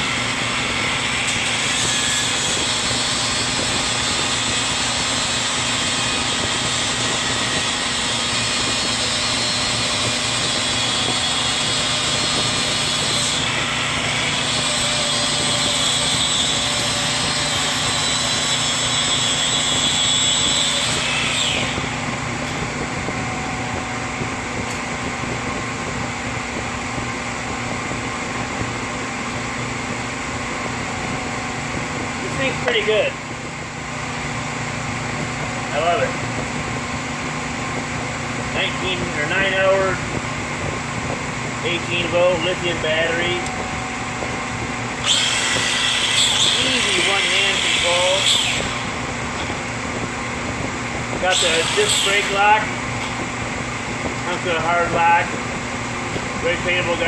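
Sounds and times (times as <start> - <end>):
angle grinder whining: 0.0 - 25.8, 38.4 - 57.0
steady low hum: 0.0 - 57.0.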